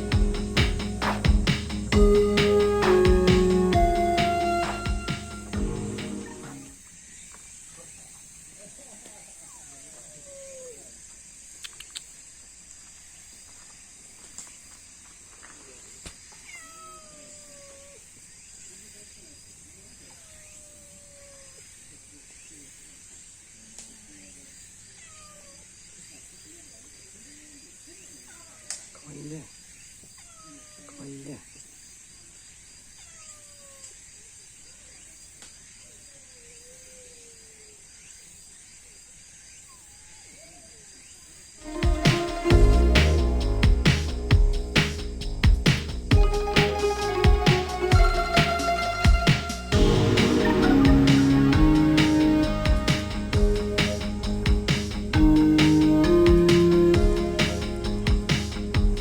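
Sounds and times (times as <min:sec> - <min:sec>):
drawn-out falling call: 0:00.0 - 0:06.7, 0:41.6 - 0:45.1, 0:45.7 - 0:59.0
insects chirping at night: 0:00.0 - 0:46.5
steady high-pitched hiss: 0:00.0 - 0:59.0.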